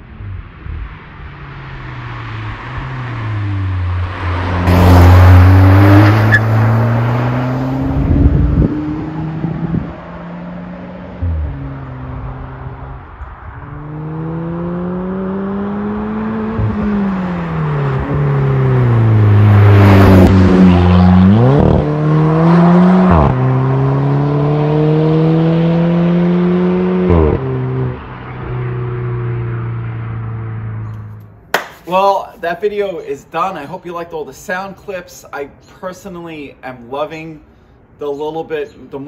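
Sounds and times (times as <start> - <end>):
car engine accelerating hard: 0.2 - 31.2.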